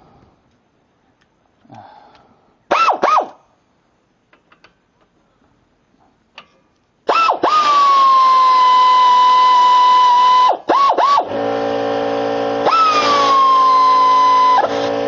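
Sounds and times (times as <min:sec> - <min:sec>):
air ratchet whine: 0:07.1 - 0:15.0.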